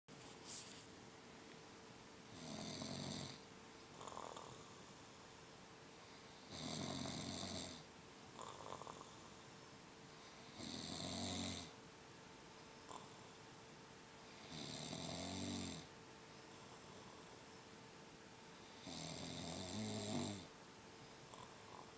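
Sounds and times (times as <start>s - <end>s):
deep rattling snoring: 4.0s - 4.7s, 6.5s - 7.8s, 8.4s - 9.2s, 18.8s - 20.5s.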